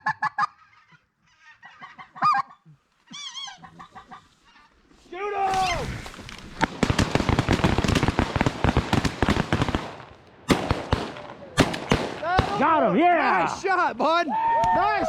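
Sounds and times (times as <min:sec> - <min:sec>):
volley of shotgun fire: 0:05.4 - 0:12.9.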